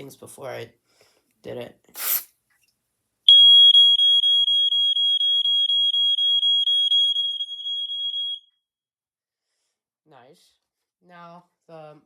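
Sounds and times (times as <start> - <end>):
smoke alarm high tone: 3.3 - 8.6.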